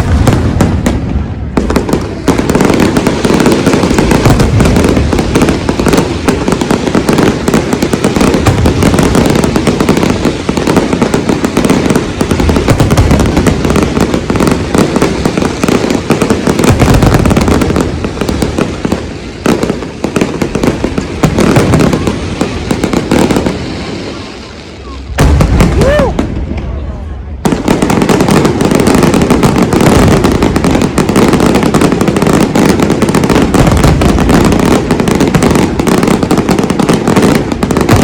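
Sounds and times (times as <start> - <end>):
fireworks booming and crackling: 0.0 - 38.0.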